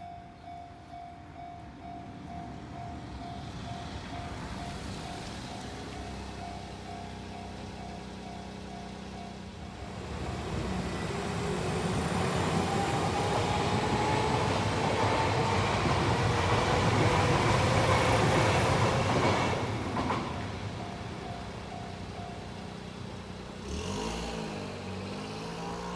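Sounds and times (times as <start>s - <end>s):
electric train rumbling: 0.0s - 25.9s.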